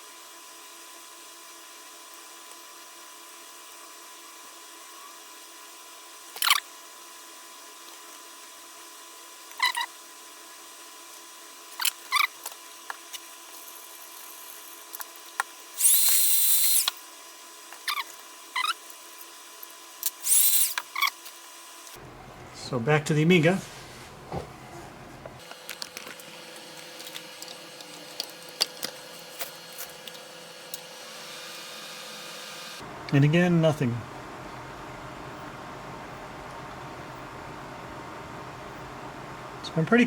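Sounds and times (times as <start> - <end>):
soldering iron sizzling hisses: 15.8 - 17.0, 20.1 - 20.8
steady low hum: 22.0 - 30.8.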